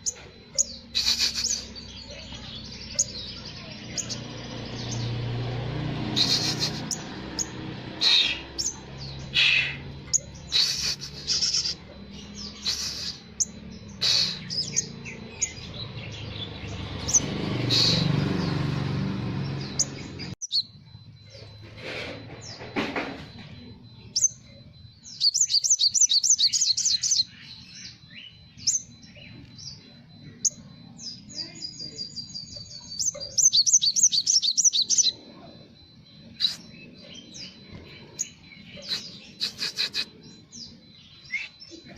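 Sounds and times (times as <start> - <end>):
fast chattering bird trills: 0.0 - 5.2, 6.0 - 18.3, 25.2 - 27.7, 32.5 - 35.2, 38.0 - 40.5
bird chirping and whistling: 0.0 - 22.7, 23.9 - 35.2, 36.2 - 41.9.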